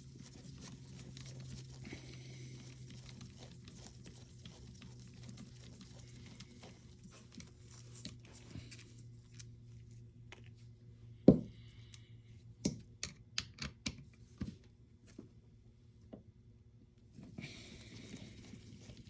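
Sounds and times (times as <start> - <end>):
small parts scratching: 0.0 - 10.4.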